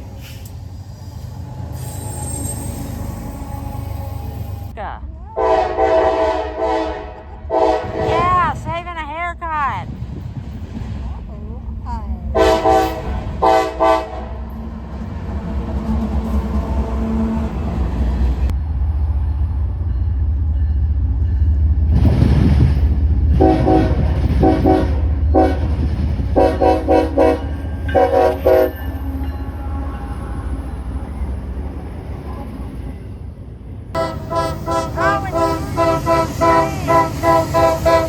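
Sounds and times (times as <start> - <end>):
train rumbling: 0.0 - 38.0
train horn blasts: 5.4 - 8.4, 12.4 - 14.6, 23.3 - 30.8, 34.0 - 38.0.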